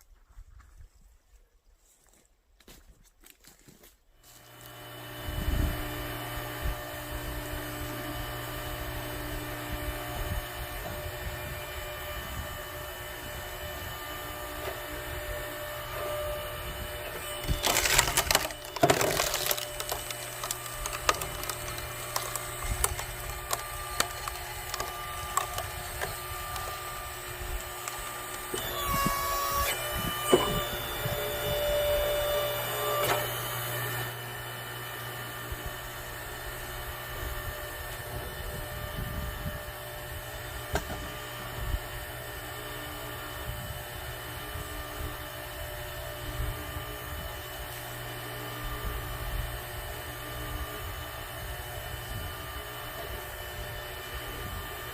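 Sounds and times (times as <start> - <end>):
log splitter humming: 4.2 - 54.9
wood cracking and splintering: 17.2 - 31.4.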